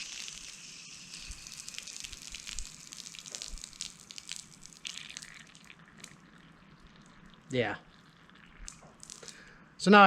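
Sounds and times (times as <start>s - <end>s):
faint hiss: 0.0s - 6.2s
water dripping and trickling: 0.0s - 9.5s.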